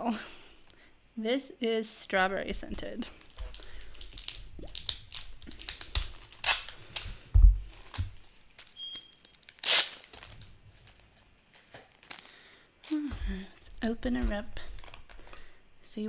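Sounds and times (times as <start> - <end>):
plastic packaging crinkling: 2.5 - 15.6
plastic wrapping tearing: 3.0 - 15.5.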